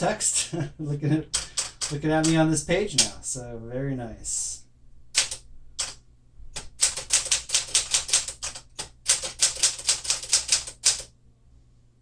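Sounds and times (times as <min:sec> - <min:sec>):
manual typewriter clacking: 0:01.3 - 0:03.2, 0:05.2 - 0:06.0, 0:06.6 - 0:11.1.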